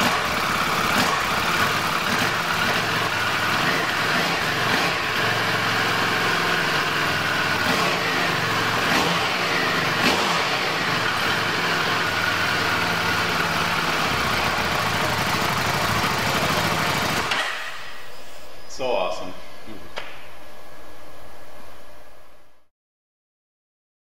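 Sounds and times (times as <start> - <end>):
motorcycle engine idling: 0.0 - 18.2.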